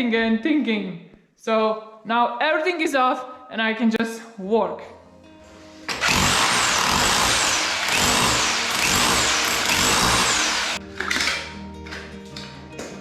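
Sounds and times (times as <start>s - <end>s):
electric power tool whining: 5.9s - 10.8s.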